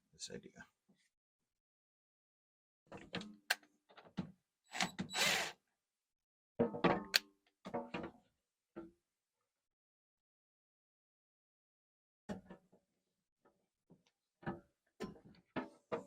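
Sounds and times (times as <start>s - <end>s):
objects knocking and clunking: 6.6s - 9.0s, 12.3s - 16.0s.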